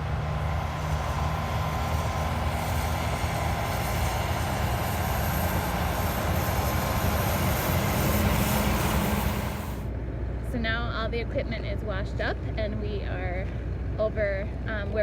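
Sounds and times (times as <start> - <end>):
machine engine running: 0.0 - 9.9.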